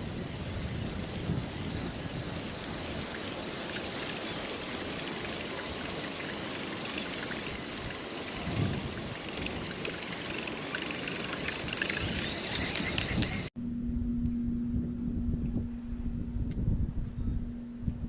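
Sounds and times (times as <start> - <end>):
small splashes and ticks: 2.6 - 13.4.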